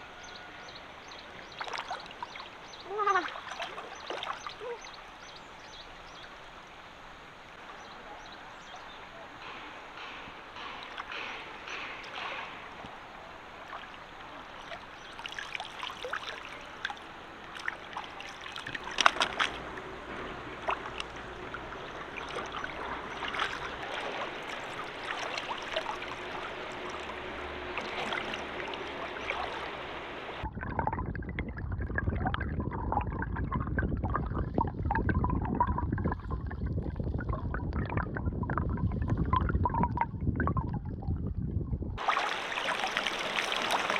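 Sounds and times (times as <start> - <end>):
shallow water trickling: 0.0 - 7.7, 9.9 - 41.2, 42.0 - 43.9
water rushing: 0.0 - 31.0, 42.0 - 43.9.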